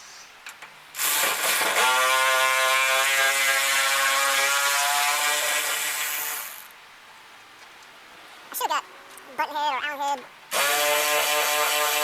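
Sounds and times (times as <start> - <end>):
power tool motor whining: 1.0 - 6.7, 10.5 - 12.0.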